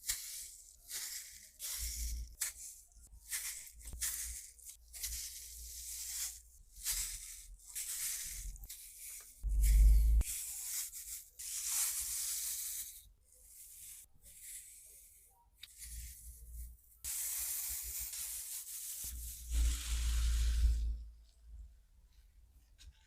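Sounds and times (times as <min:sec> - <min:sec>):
hands rubbing a foam toy: 0:00.0 - 0:21.2
low rumble: 0:09.4 - 0:10.2.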